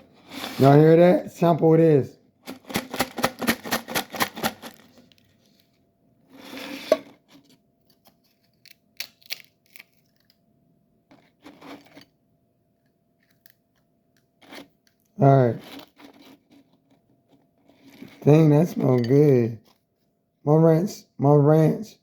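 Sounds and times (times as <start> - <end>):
chips rattling in shaken can: 2.5 - 4.9.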